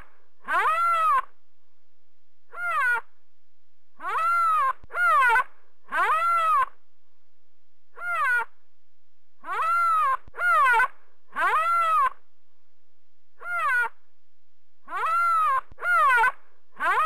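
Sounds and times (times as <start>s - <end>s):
panda cub crying: 0.5s - 1.3s, 2.5s - 3.1s, 4.0s - 6.8s, 8.0s - 8.5s, 9.4s - 12.2s, 13.4s - 14.0s, 14.9s - 17.0s.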